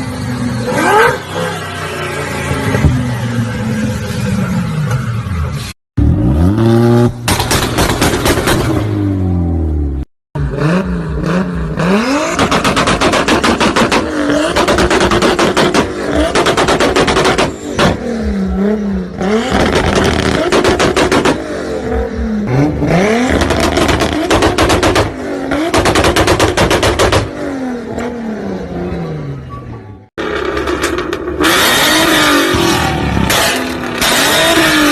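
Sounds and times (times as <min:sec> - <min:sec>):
sports car engine revving: 0:06.0 - 0:29.2, 0:30.2 - 0:34.9.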